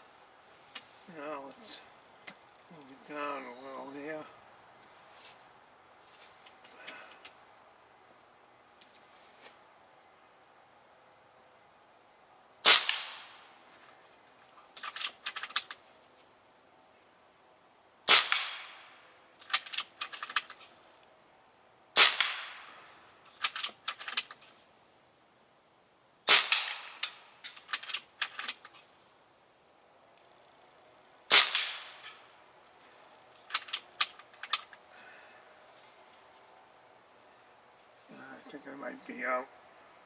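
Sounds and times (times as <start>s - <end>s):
air rifle shots: 12.6s - 13.6s, 18.1s - 20.6s, 22.0s - 24.2s, 26.3s - 28.6s, 31.3s - 32.4s.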